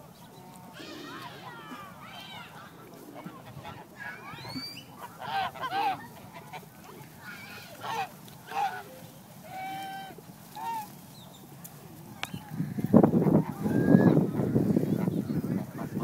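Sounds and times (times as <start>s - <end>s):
geese honking: 0.7s - 8.9s.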